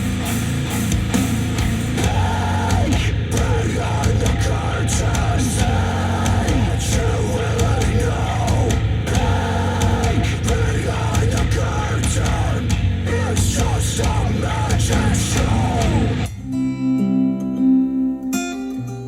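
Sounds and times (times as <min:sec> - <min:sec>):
heavy rock song with vocals: 0:00.0 - 0:16.4
plucked acoustic guitar: 0:16.2 - 0:19.0.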